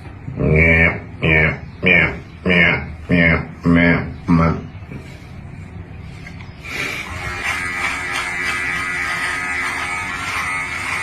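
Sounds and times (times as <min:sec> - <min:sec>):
steady buzzing: 0:06.7 - 0:11.0.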